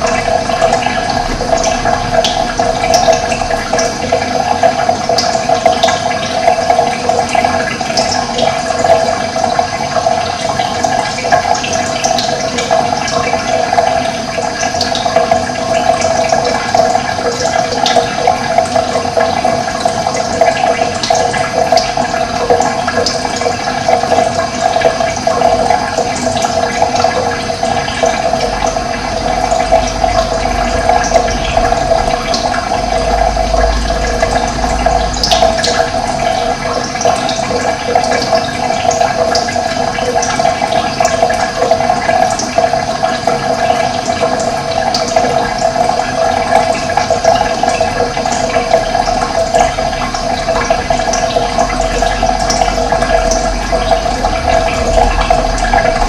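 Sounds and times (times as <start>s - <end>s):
running water rushing: 0.0s - 56.0s.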